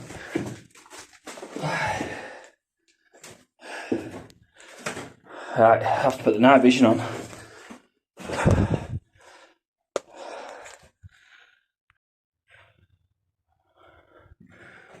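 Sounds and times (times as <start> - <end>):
heavy sigh: 1.6 - 2.5.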